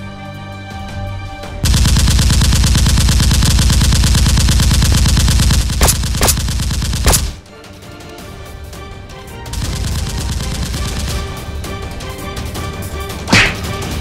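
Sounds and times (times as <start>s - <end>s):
background music: 0.0s - 1.8s, 6.5s - 14.0s
automatic gunfire: 1.6s - 7.4s, 9.5s - 11.8s.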